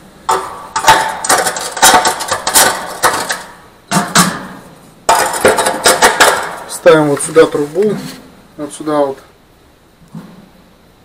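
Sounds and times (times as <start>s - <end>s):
metallic knocks and clatter: 0.3s - 6.8s.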